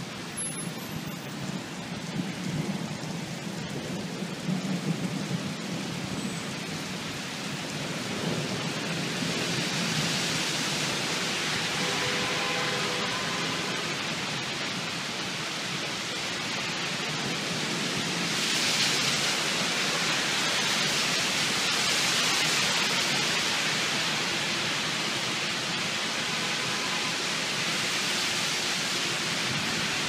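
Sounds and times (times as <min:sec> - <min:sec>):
heavy rain falling: 0:00.0 - 0:30.0.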